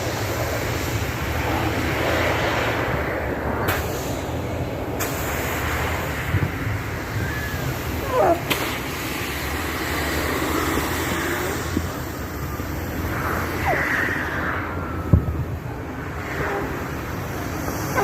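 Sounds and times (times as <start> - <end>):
low rumble: 0.0 - 17.9
short wavering squeals: 7.1 - 8.5.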